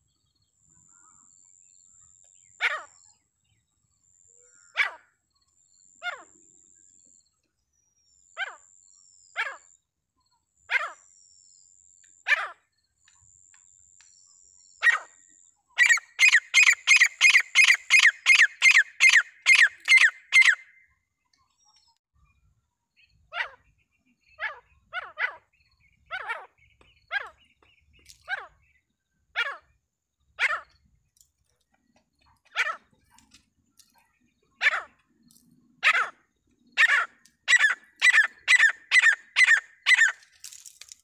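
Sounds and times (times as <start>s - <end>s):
francolin calling: 15.8s - 20.8s, 35.8s - 40.3s.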